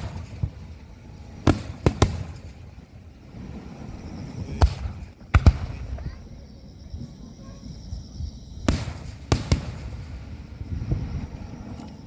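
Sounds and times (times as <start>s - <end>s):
firework shells bursting: 0.0s - 3.3s, 4.5s - 6.2s, 8.6s - 10.8s.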